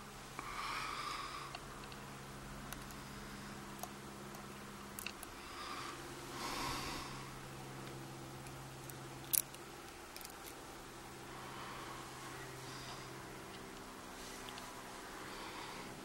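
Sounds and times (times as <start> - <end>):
breathing out through nose: 5.4 - 7.4, 15.2 - 16.0
lock parts clicking: 9.2 - 10.6.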